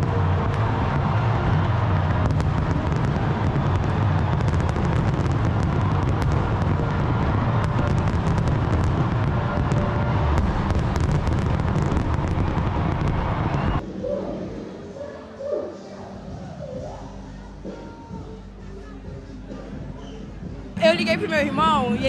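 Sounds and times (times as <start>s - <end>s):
fireworks bursts rumbling: 0.0s - 13.6s, 20.8s - 22.0s
fireworks crackles: 2.1s - 13.4s.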